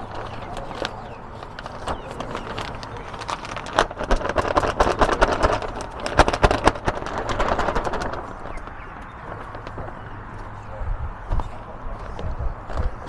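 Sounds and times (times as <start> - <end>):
mulch crunching and rustling: 0.0 - 13.0.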